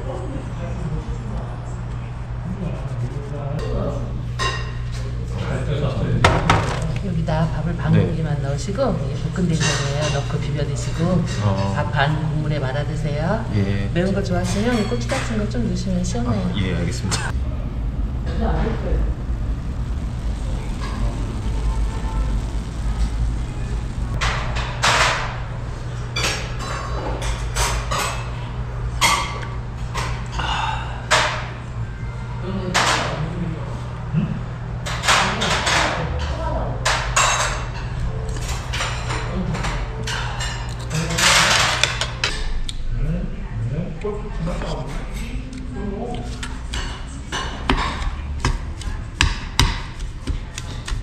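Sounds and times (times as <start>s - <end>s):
low steady hum: 0.0s - 34.9s.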